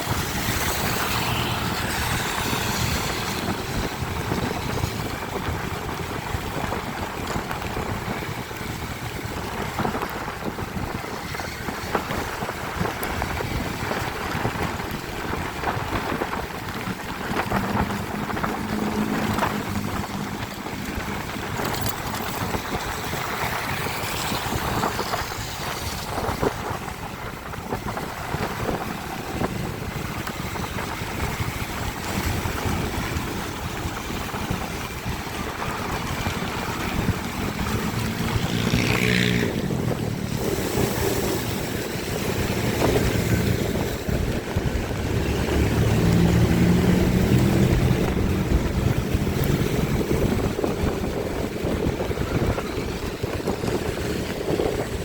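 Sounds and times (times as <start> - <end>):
rain hissing: 0.0 - 21.7, 22.4 - 54.7
tyres on wet asphalt: 0.0 - 55.0
wind on microphone: 0.0 - 55.0.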